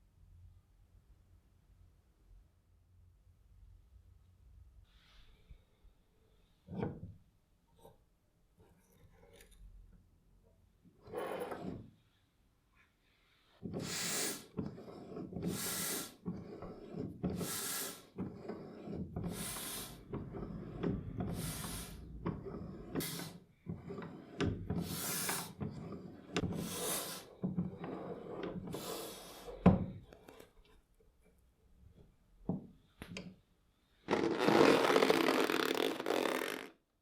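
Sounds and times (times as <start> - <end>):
pump parts rubbing: 13.6 - 30.5, 34.1 - 36.7
air pump hissing: 13.8 - 14.5, 15.4 - 16.2, 17.3 - 18.2, 19.3 - 20.1, 21.3 - 22.1, 22.9 - 23.4, 24.7 - 25.6, 26.4 - 27.3, 28.7 - 29.6.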